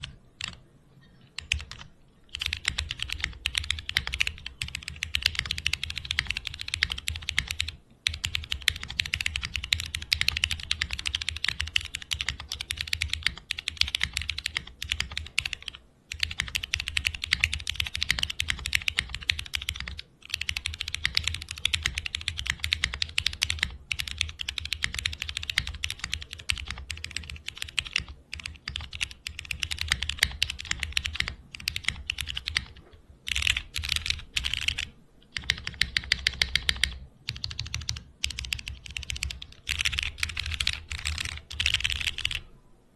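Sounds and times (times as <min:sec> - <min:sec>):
mechanical keyboard clacking: 0:00.0 - 0:00.6, 0:01.2 - 0:42.4.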